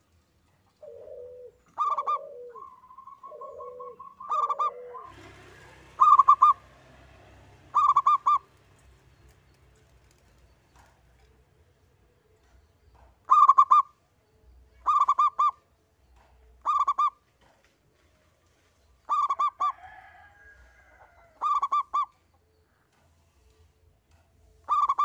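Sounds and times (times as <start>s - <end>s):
dove cooing: 0.0s - 8.9s, 12.4s - 14.0s, 14.7s - 17.6s, 19.0s - 20.2s, 21.0s - 22.2s, 24.6s - 25.0s.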